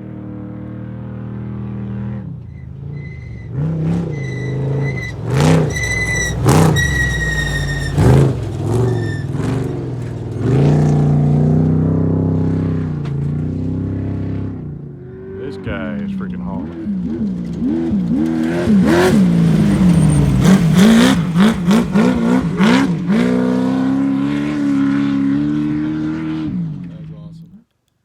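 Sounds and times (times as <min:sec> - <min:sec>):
race car engine revving: 0:00.0 - 0:27.6.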